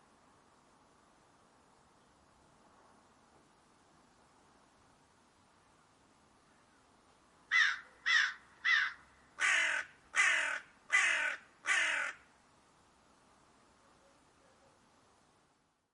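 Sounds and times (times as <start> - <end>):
crow cawing: 7.5 - 12.3.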